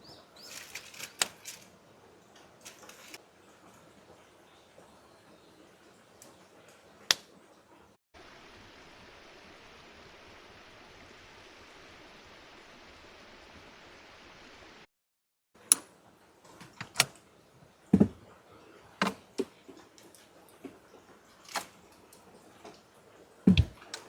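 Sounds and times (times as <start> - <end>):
sharp clicks and knocks: 16.6 - 17.2, 23.5 - 24.0.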